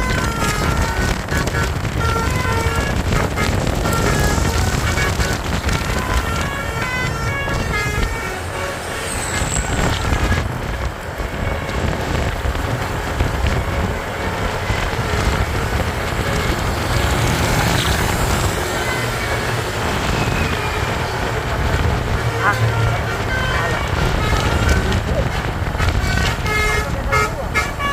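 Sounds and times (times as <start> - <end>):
bus horn playing short notes: 0.0 - 12.4, 22.2 - 25.1, 25.8 - 27.9
bus engine rumble: 0.0 - 27.9
road traffic: 0.0 - 27.9.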